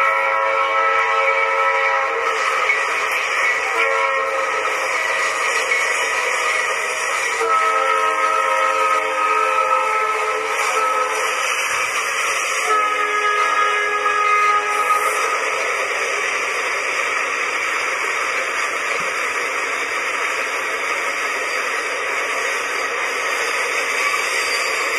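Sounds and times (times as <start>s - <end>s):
locomotive air horn chord: 0.0s - 2.7s, 3.5s - 5.4s, 7.0s - 11.7s, 12.5s - 15.6s.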